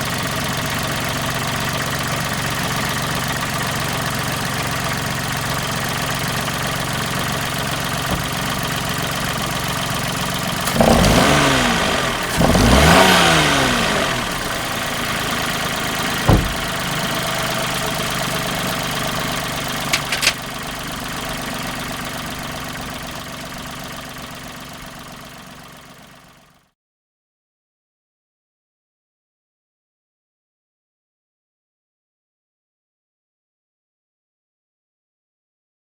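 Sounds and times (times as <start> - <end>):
car engine idling and revving: 0.1 - 26.4
sharp clicks: 19.9 - 20.4.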